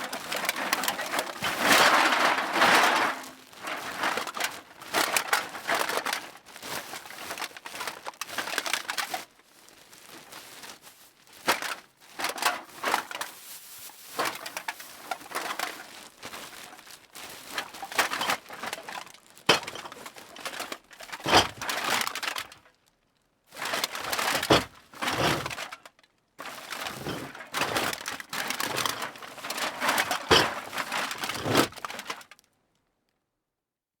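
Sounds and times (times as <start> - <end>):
metal cans clattering: 0.0 - 6.3, 11.5 - 13.4, 14.2 - 15.8, 17.5 - 22.6, 23.6 - 32.2.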